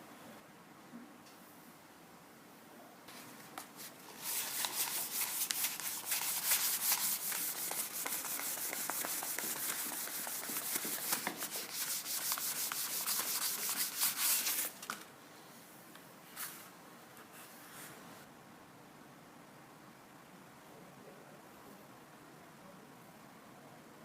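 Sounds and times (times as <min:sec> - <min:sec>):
hand sanding strokes: 0:03.8 - 0:14.7.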